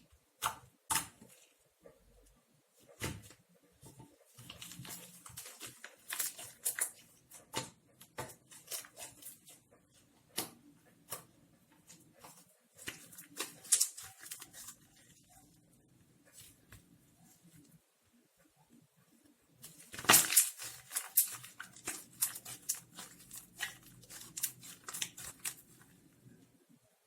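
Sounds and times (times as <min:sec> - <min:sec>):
slime squelching by hand: 0:19.6 - 0:25.9.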